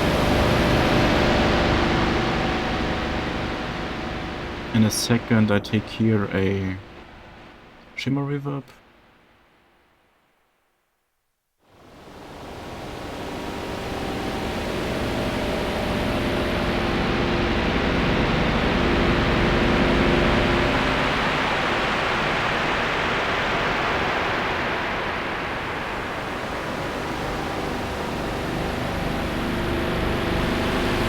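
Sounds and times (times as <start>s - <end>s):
airy synthesizer noise wash: 0.0s - 8.2s, 11.8s - 31.0s
faint held synth notes: 0.0s - 8.7s, 26.2s - 31.0s.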